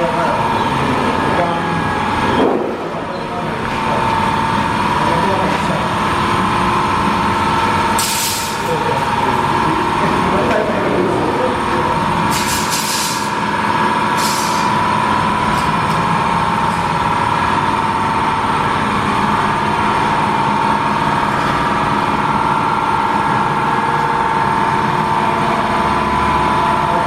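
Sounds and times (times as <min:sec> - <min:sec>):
workshop machine whine: 0:00.0 - 0:27.0
short sharp hisses: 0:08.0 - 0:08.6, 0:12.3 - 0:13.3, 0:14.2 - 0:14.6.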